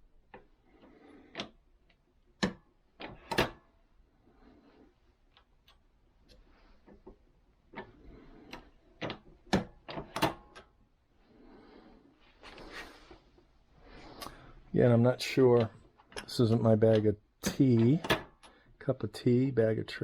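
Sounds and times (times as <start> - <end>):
metal equipment clicks and clunks: 15.5 - 18.6.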